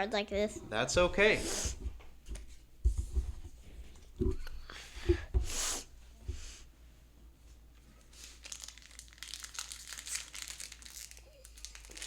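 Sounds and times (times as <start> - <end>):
foil wrapper crinkling: 8.0 - 12.0
foil wrapper tearing: 8.2 - 12.0.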